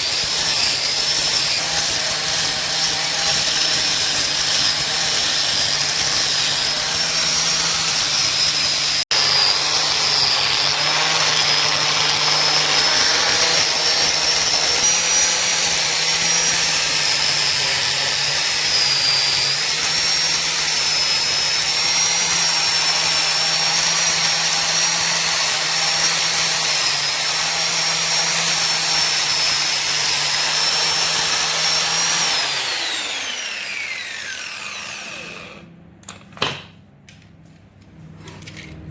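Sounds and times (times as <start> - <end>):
power tool whining: 0.0 - 35.7.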